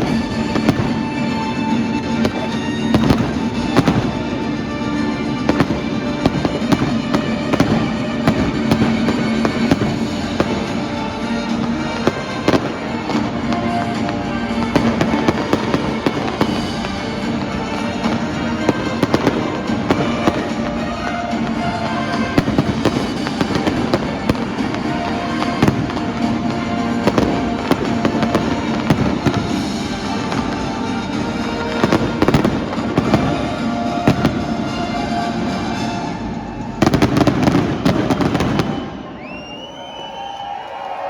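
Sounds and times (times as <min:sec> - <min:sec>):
steady music: 0:00.0 - 0:39.5
fireworks bangs and crackles: 0:00.0 - 0:40.9.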